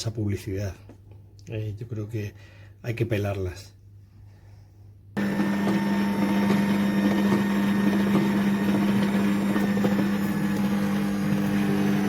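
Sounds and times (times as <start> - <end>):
grainy churning of oranges: 5.2 - 12.0
juicer motor humming: 5.2 - 12.0.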